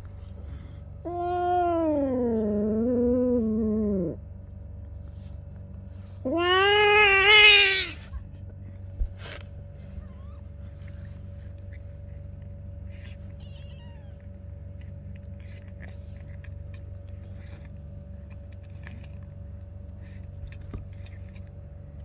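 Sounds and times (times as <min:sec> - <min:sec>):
cat licking and chewing: 0:03.4 - 0:22.0
high wavering kitten squeak: 0:06.3 - 0:08.0, 0:13.4 - 0:14.2.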